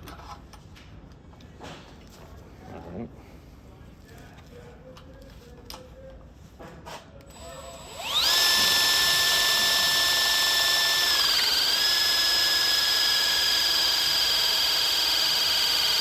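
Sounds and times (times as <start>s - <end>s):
hydraulic pump motor whining: 7.3s - 16.0s.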